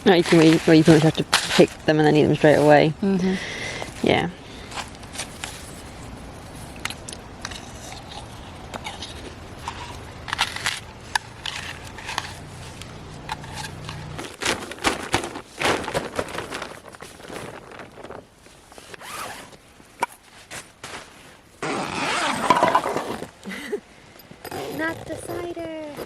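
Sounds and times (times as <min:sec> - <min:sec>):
rustling of gear: 0:03.7 - 0:26.0
zip being pulled: 0:18.9 - 0:19.6, 0:21.6 - 0:23.4, 0:24.4 - 0:26.0.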